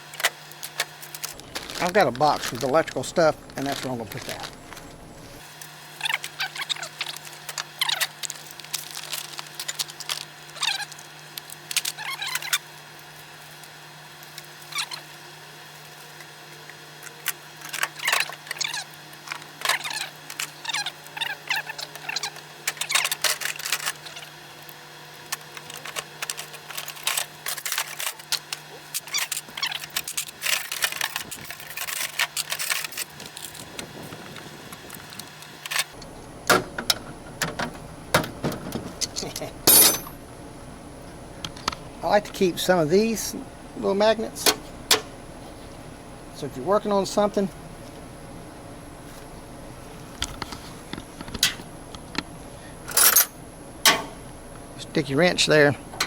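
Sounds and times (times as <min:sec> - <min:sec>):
steady low hum: 0:01.2 - 0:05.5, 0:32.9 - 0:56.0
metal hand tools clinking: 0:39.1 - 0:40.2, 0:52.9 - 0:54.1.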